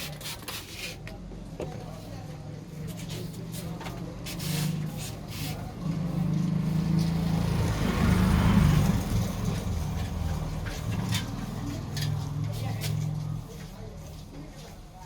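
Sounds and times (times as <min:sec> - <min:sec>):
vehicle engine passing by: 0:04.4 - 0:13.5.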